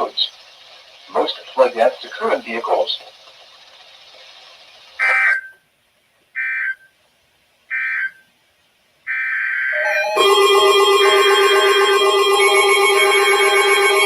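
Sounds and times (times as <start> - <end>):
high-pitched data tone bursts: 9.7 - 14.0
low steady tone: 9.8 - 14.0.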